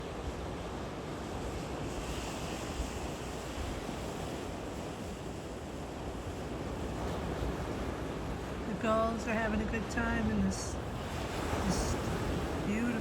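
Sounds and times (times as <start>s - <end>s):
ocean surf breaking: 9.0s - 13.0s.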